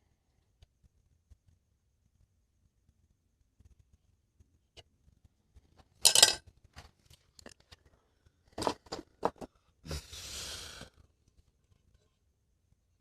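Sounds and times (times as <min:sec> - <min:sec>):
crackly rustle: 0:03.5 - 0:09.4
small hard objects clinking: 0:06.0 - 0:06.4
scraping hiss: 0:09.9 - 0:11.0.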